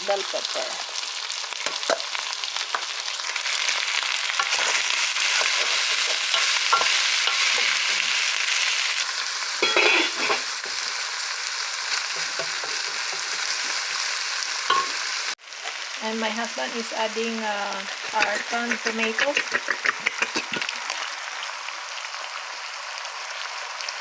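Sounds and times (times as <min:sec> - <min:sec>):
meat sizzling in a frying pan: 0:00.0 - 0:24.0
stirring scrapes and clicks: 0:18.0 - 0:20.8.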